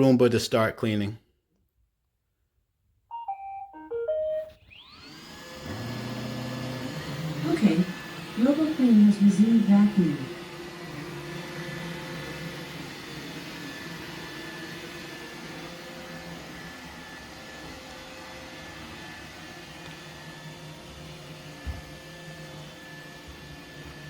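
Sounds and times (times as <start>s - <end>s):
robot vacuum motor hum: 4.5s - 24.0s.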